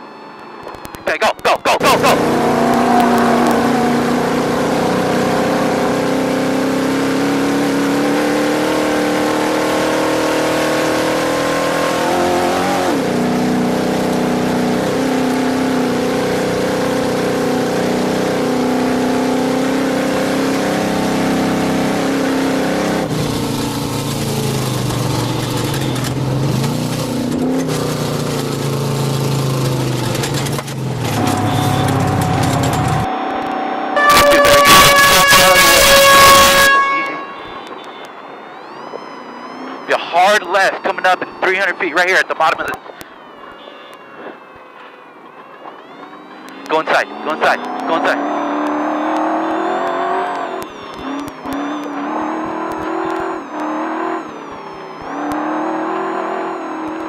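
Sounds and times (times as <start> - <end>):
road and wind noise: 0.0 - 57.0
truck engine running hard: 1.1 - 36.7.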